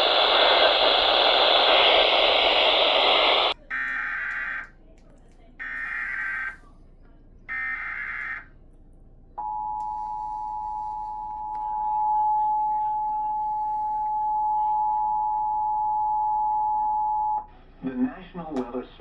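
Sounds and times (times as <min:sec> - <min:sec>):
digital header bursts: 0:00.0 - 0:04.6.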